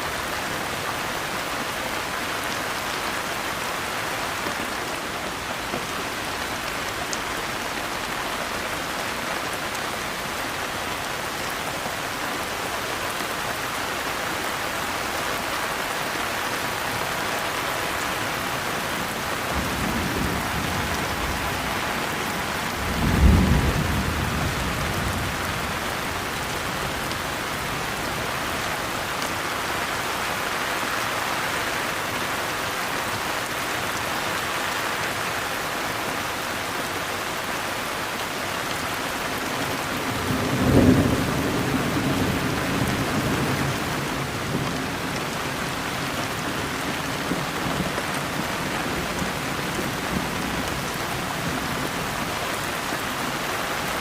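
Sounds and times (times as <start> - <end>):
thunder rumbling: 19.4 - 25.8.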